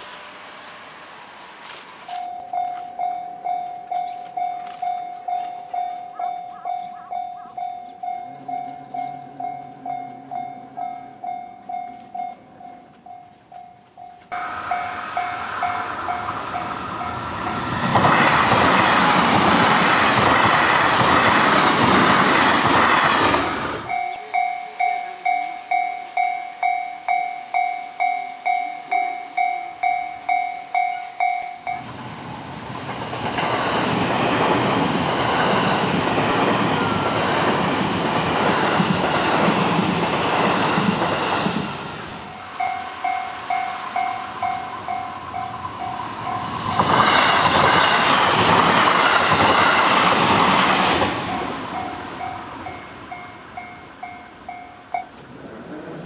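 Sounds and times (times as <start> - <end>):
train passing: 0.0 - 56.0
level-crossing warning bell: 1.7 - 18.8, 23.8 - 32.0, 38.7 - 50.0, 50.8 - 55.2.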